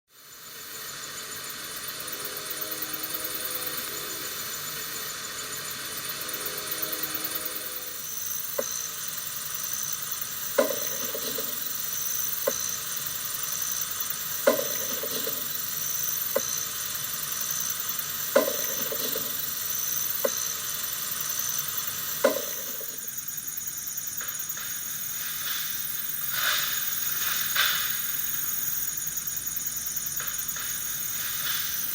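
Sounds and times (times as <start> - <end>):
steady high night-time hiss: 0.1 - 31.9
sharp knocks: 10.6 - 11.6, 14.5 - 15.5, 18.4 - 19.4, 22.2 - 23.0.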